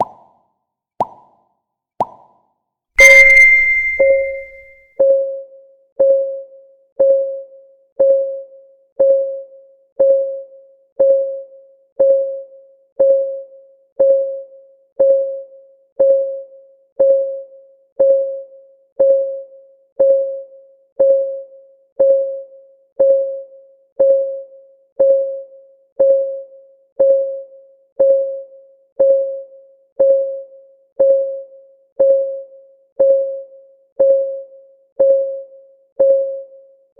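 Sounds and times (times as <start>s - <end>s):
bright ringing ding: 3.0s - 4.6s.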